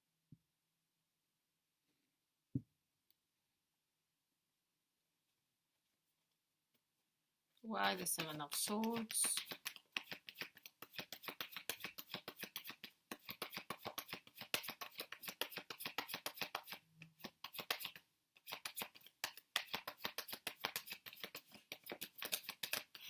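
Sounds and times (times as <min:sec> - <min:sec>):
cards being shuffled: 0:07.9 - 0:23.0.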